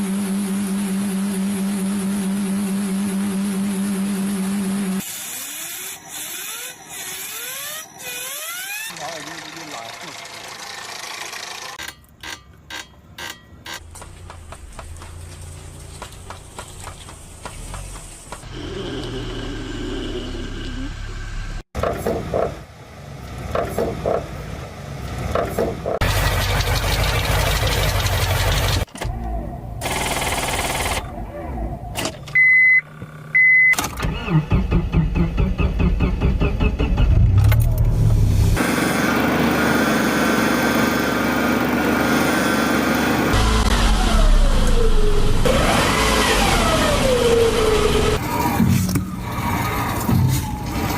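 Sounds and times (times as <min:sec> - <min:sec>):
car engine cranking and starting: 0:05.5 - 0:18.4, 0:20.9 - 0:50.9
rapid mechanical ticking: 0:08.7 - 0:13.4
short electronic beeps: 0:32.4 - 0:33.8
low hum: 0:34.5 - 0:38.6.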